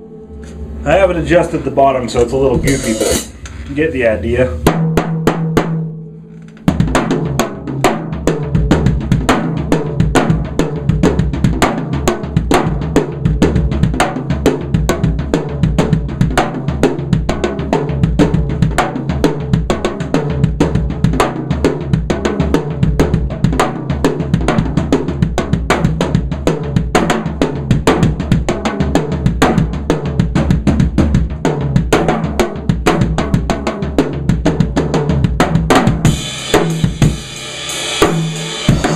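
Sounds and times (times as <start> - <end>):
bass drum: 0.0 - 3.9, 4.5 - 5.9, 6.6 - 38.9
cymbals: 0.0 - 3.9, 36.0 - 38.9
low tuned snare drum: 0.8 - 5.9, 6.7 - 38.9.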